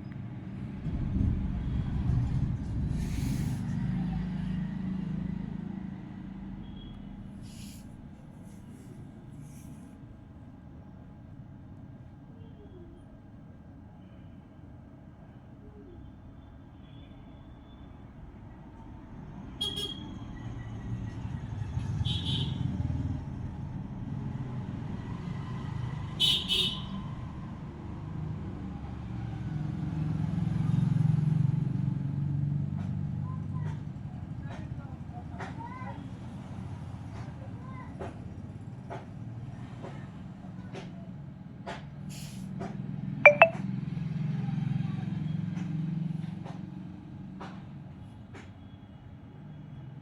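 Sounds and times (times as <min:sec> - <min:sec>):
traffic engine rumble: 0:00.0 - 0:09.8
short hisses: 0:03.0 - 0:03.7, 0:07.4 - 0:07.9
short high-pitched sounds: 0:43.3 - 0:43.6.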